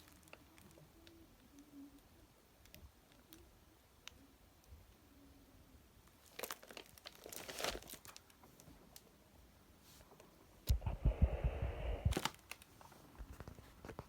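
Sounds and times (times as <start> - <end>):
packaging crinkling: 6.2 - 8.4, 12.1 - 14.0.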